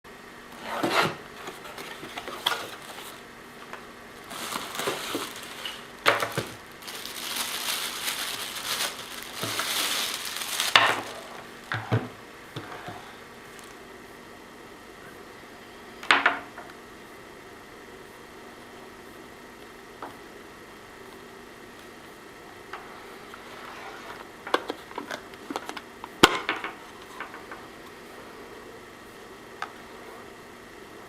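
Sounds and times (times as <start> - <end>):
cardboard box rustling and scraping: 0.6 - 3.2, 4.2 - 11.4.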